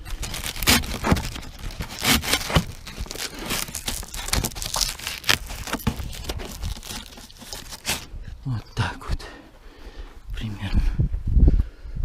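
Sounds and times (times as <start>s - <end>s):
crinkling and scraping: 0.0s - 8.2s.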